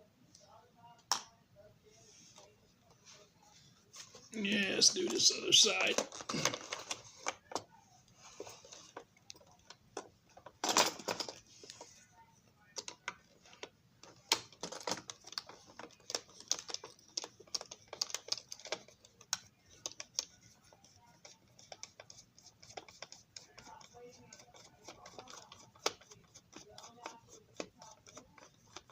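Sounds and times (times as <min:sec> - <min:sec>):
plastic parts clattering: 0:04.4 - 0:07.6, 0:10.4 - 0:11.5, 0:12.8 - 0:18.9
small tools tapping plastic: 0:12.8 - 0:20.3.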